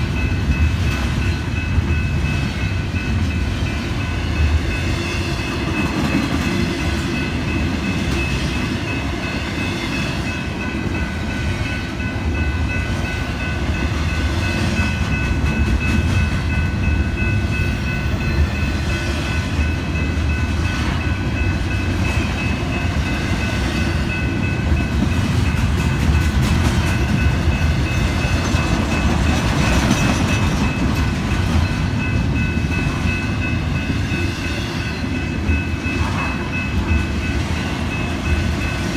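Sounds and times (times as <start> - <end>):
train wheels rumbling on rails: 0.0 - 38.9.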